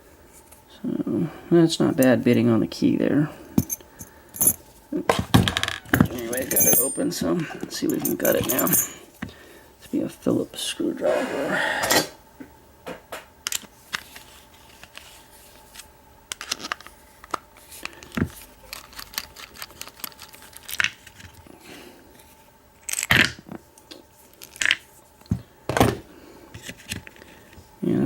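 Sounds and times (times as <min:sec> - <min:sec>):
handling clatter: 0:03.6 - 0:04.6, 0:05.4 - 0:09.0.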